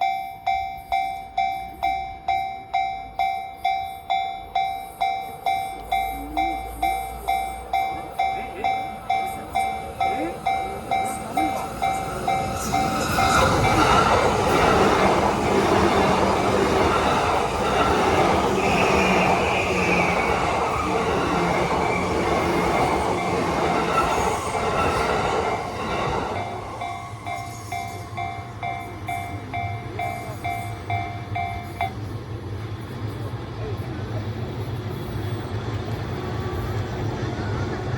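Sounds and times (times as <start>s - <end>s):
level-crossing bell dinging: 0.0s - 19.5s, 21.4s - 32.1s
train wheels rumbling on rails: 0.0s - 37.9s.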